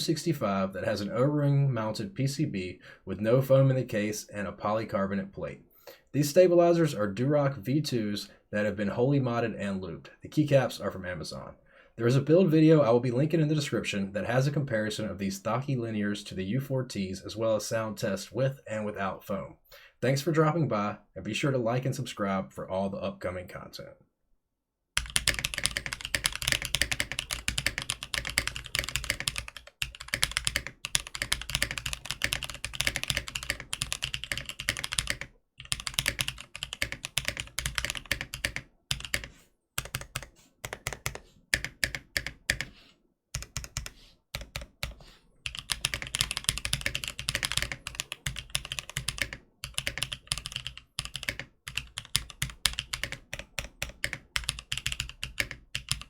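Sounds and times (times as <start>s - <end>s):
mechanical keyboard typing: 25.0s - 42.7s, 43.4s - 56.0s.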